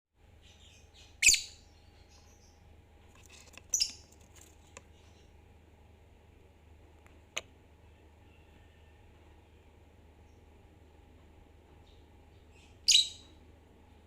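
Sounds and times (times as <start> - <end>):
lovebirds chirping: 0.2 - 5.4, 11.8 - 13.5.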